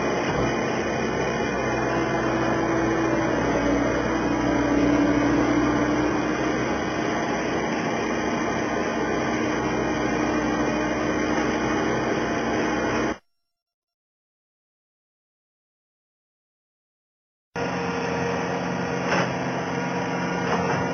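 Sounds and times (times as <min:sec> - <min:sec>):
loader engine running: 0:00.0 - 0:13.2, 0:17.6 - 0:20.9.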